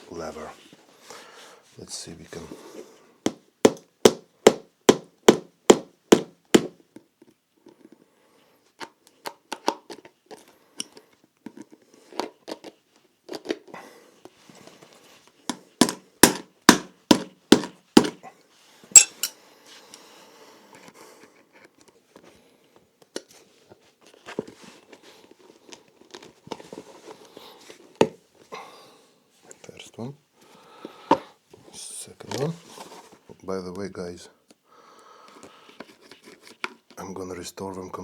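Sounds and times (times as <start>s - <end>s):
hammer striking a shoe: 3.3s - 6.8s, 15.8s - 18.2s.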